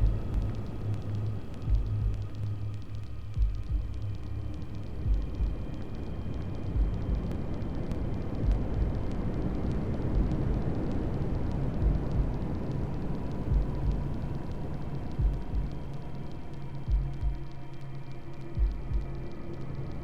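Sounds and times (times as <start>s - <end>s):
white noise hiss: 0.0s - 20.0s
low heartbeat thump: 1.7s - 2.4s, 3.4s - 4.1s, 6.8s - 7.4s, 8.4s - 9.0s, 13.5s - 14.1s, 15.2s - 15.8s, 18.6s - 19.2s.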